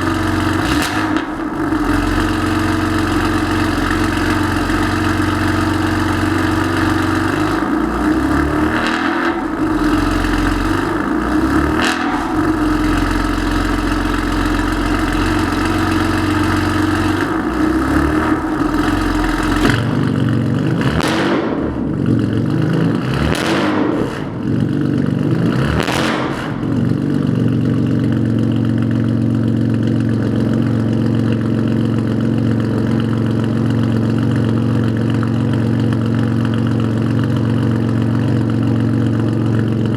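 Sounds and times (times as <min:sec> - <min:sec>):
car engine idling: 0:00.0 - 0:23.0, 0:24.1 - 0:25.7, 0:26.3 - 0:39.9
car engine revving: 0:00.0 - 0:28.8.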